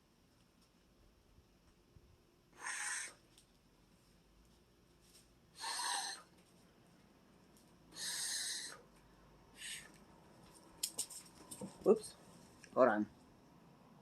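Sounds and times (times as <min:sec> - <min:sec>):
person breathing out heavily: 0:02.6 - 0:03.2, 0:05.6 - 0:06.3, 0:07.9 - 0:08.9, 0:09.5 - 0:10.0.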